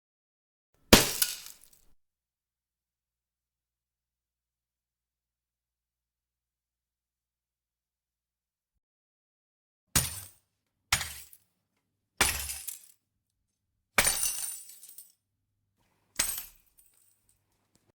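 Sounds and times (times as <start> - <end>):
glass smashing: 0.9 - 2.0, 14.0 - 15.0.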